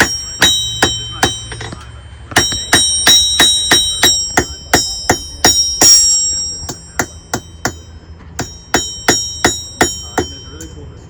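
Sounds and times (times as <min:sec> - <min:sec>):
hammer striking iron on anvil: 0:00.0 - 0:10.8.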